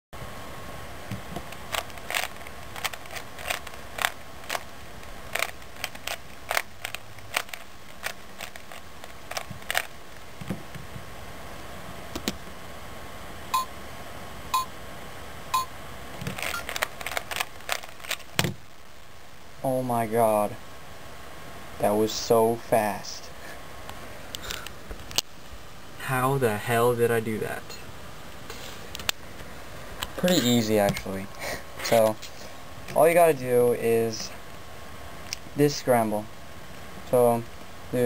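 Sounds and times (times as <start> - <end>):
puzzle cube plastic clicking: 1.4 - 10.0, 16.3 - 18.5.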